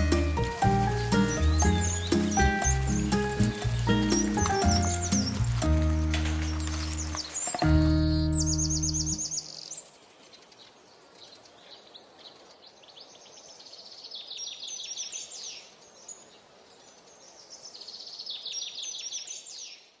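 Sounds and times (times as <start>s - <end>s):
songbird trilling: 0.0s - 5.6s
faint outdoor background: 0.0s - 20.0s.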